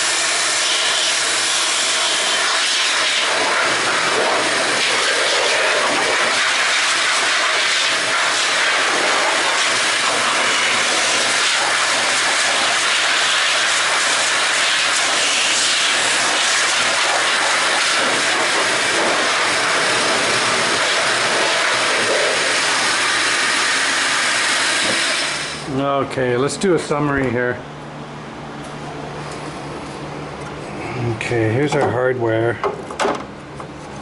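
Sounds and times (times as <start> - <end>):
loud steady hiss: 0.0 - 26.0.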